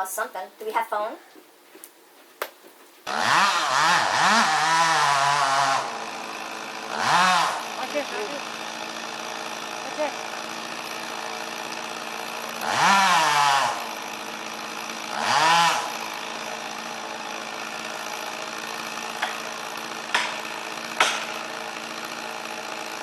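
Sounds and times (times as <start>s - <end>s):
chainsaw idling and revving: 3.0s - 23.0s
sharp knocks: 20.1s - 20.4s, 21.0s - 21.4s.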